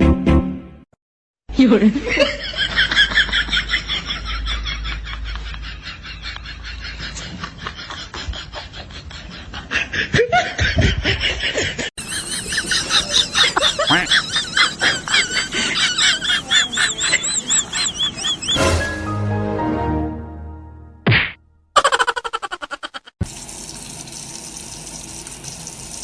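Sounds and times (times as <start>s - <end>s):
high-pitched laughter: 3.1s - 18.6s, 21.8s - 23.2s.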